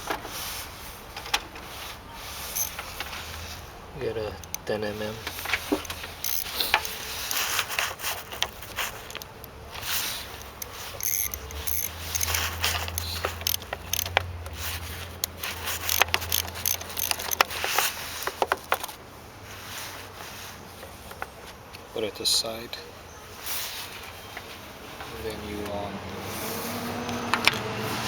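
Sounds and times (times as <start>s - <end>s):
metal clinks and scrapes: 2.4s - 18.4s
ratchet wrench clicking: 2.5s - 3.4s, 4.3s - 18.8s.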